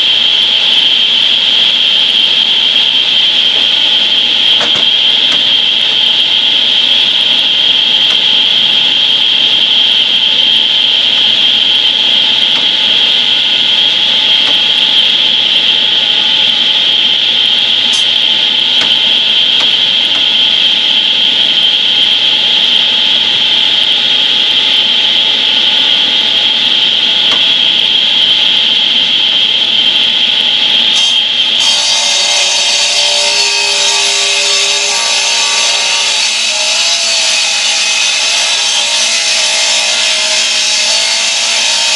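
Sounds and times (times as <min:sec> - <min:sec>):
concrete saw cutting stone: 0:01.1 - 0:23.3, 0:30.9 - 0:41.9.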